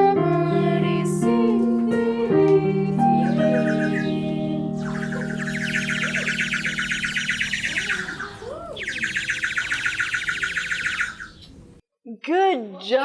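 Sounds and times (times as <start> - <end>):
faint singing: 0.0 - 8.9
toy bird whistle trilling: 3.2 - 11.6.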